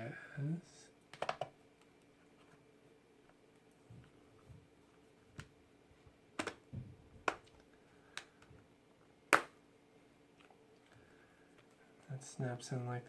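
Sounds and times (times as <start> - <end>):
tablet case clicks and knocks: 1.2 - 1.5, 6.4 - 6.6, 7.2 - 7.5
tablet snapping into case: 6.4 - 6.6, 7.2 - 7.5, 9.3 - 9.6.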